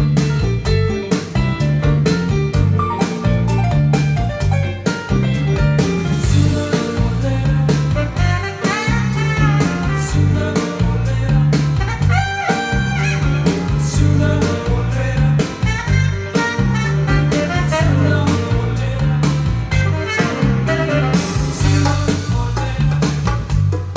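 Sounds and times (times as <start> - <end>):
music over loudspeakers: 0.0 - 23.9.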